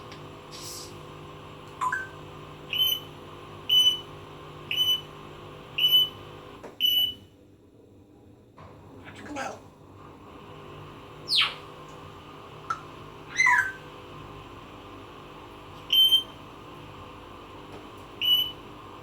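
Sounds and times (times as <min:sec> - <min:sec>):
parrot whistling: 0:11.3 - 0:11.6, 0:13.3 - 0:13.9
parrot mimicking high beeps: 0:13.3 - 0:13.8.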